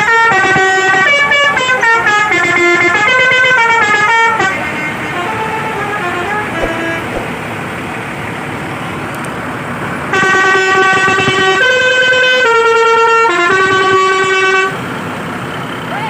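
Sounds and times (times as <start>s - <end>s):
street noise: 1.4s - 10.1s.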